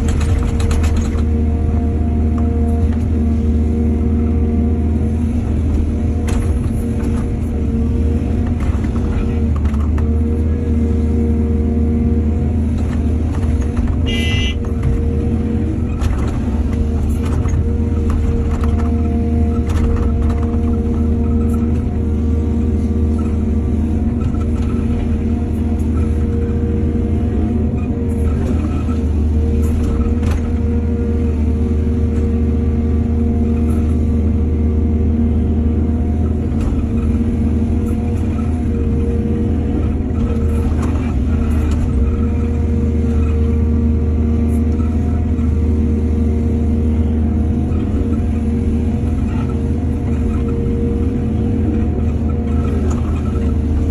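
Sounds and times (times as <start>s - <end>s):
machinery knocks and clanks: 0.0s - 1.5s, 12.7s - 22.2s, 27.4s - 32.4s
heavy diesel engine running: 0.0s - 53.9s.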